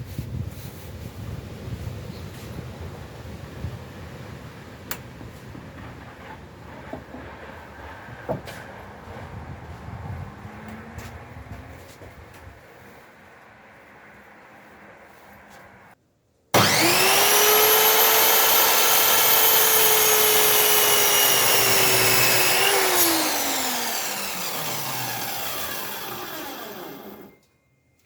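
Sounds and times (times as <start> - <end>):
electric chop saw motor whine: 16.6 - 27.4
saw blade spinning down: 16.6 - 27.4.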